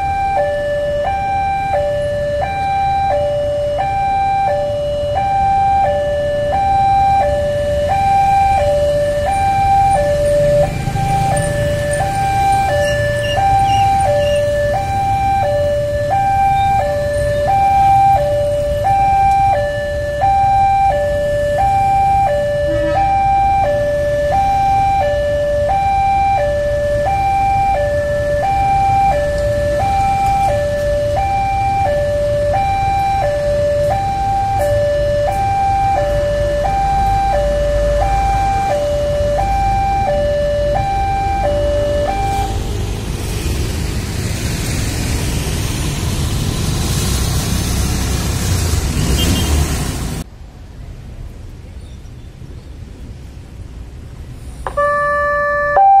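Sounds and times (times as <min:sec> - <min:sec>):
two-tone level crossing alarm: 0:00.0 - 0:42.6, 0:54.7 - 0:56.0.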